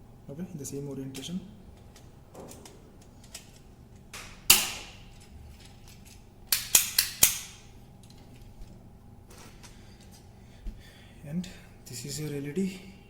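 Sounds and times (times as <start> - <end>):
sharp plastic snap: 4.1 - 5.0, 6.5 - 7.6.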